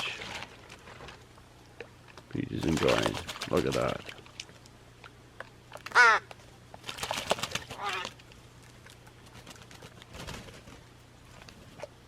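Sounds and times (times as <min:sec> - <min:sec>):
crows cawing: 0:05.9 - 0:06.4, 0:07.7 - 0:08.2
harsh bird calls: 0:07.6 - 0:08.2.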